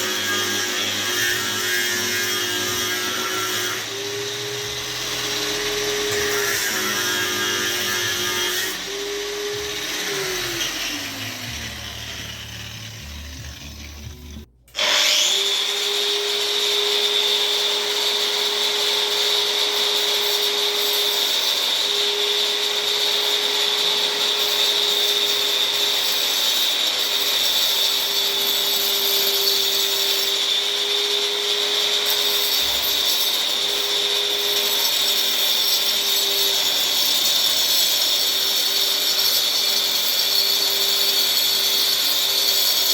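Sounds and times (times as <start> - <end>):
angle grinder whine: 0.0 - 42.9.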